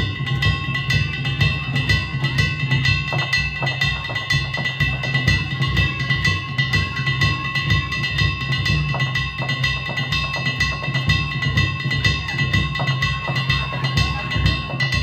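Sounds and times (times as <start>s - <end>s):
big taiko drum beating: 0.0s - 15.0s
metallic gong clanging: 0.0s - 15.0s.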